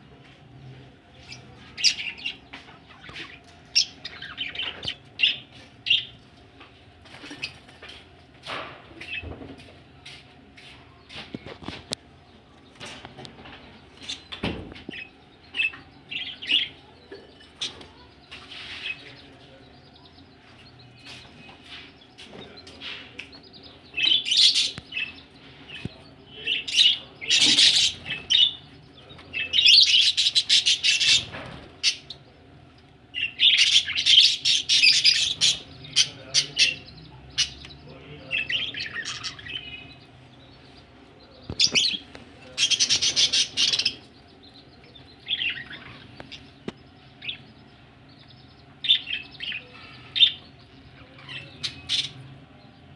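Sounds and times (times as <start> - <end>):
budgerigars chirping: 1.2 - 6.2, 18.4 - 32.3, 33.1 - 52.3.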